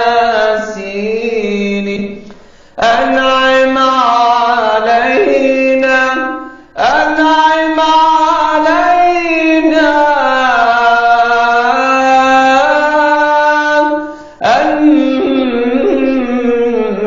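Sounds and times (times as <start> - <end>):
man singing solo devotional chant: 0.0 - 17.0.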